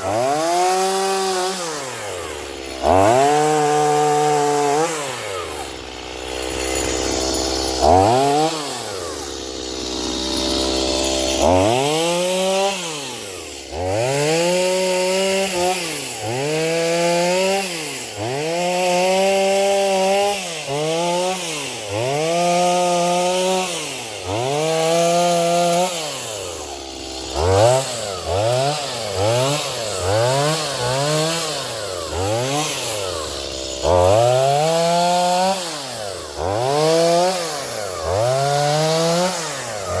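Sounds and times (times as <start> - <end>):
chainsaw revving: 0.0 - 40.0.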